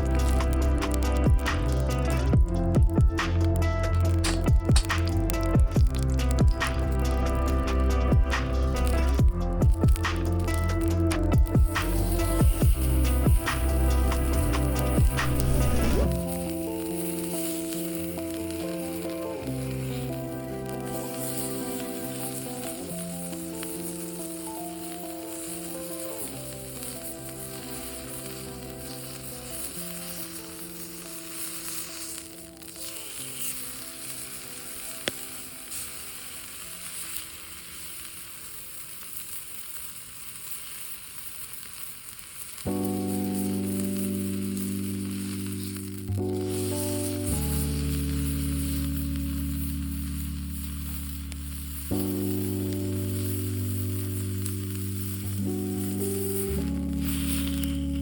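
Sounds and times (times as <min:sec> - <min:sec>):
music with heavy bass line: 0:00.0 - 0:16.6
meat sizzling on griddle: 0:00.0 - 0:58.0
sharp click: 0:04.2 - 0:05.0.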